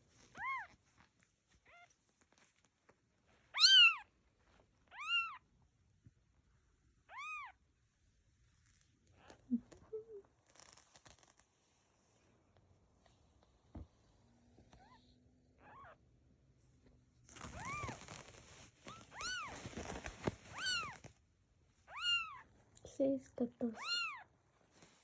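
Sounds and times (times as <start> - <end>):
soft rustling and clicks: 0.0 - 6.5, 8.3 - 15.0, 16.7 - 23.6, 24.5 - 25.0
cat meowing: 3.5 - 4.1, 4.9 - 5.4, 7.1 - 7.6, 15.6 - 16.0, 18.9 - 19.5, 20.5 - 21.0, 21.9 - 22.5, 23.8 - 24.3.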